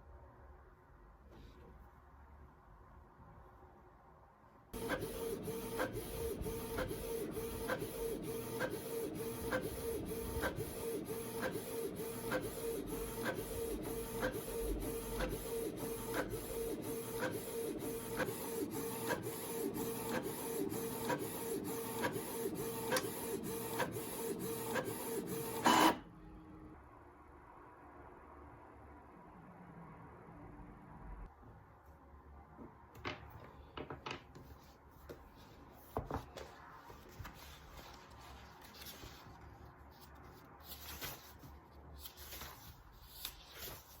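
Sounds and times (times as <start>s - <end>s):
printer printing: 4.8s - 26.1s.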